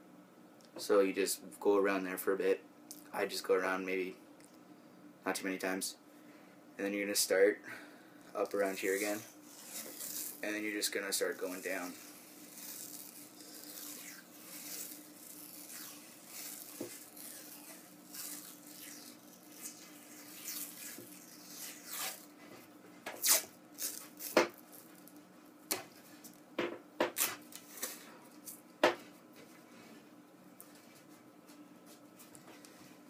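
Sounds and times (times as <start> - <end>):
tape peeling off roll: 8.4 - 22.4, 23.1 - 25.2.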